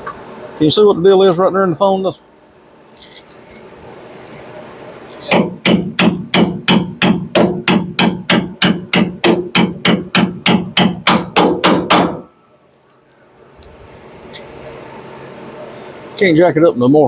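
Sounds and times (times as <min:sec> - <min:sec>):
hammer striking metal: 0:05.2 - 0:12.3.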